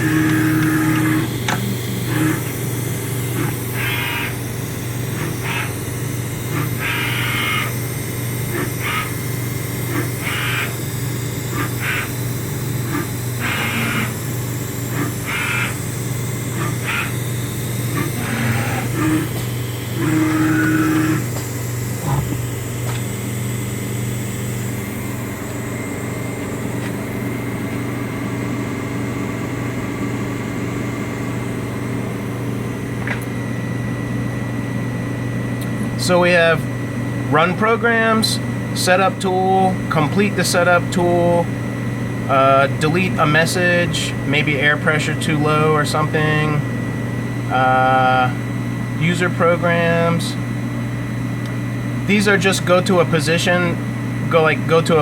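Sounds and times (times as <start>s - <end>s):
milling machine hum: 0.0s - 55.0s
harsh rasping: 12.8s - 14.2s, 14.8s - 19.4s, 20.0s - 21.3s.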